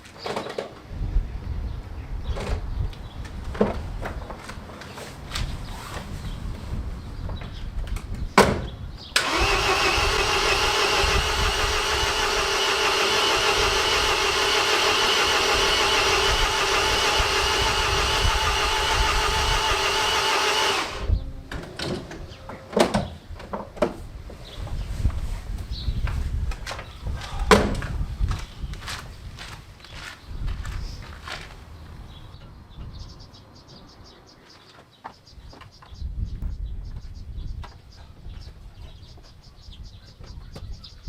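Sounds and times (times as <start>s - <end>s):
starter motor cranking whir: 9.2s - 21.2s.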